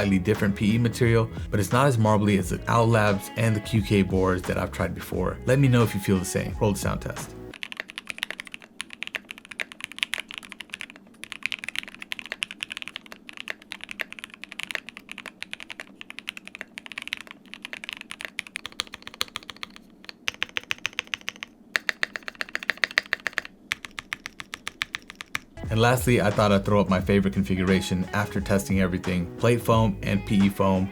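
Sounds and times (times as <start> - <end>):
mechanical keyboard typing: 7.5 - 25.6.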